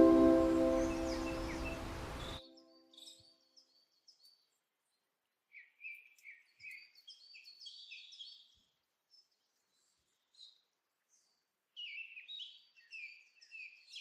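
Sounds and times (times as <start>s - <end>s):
music: 0.0s - 1.8s
songbird chirping: 0.0s - 14.0s.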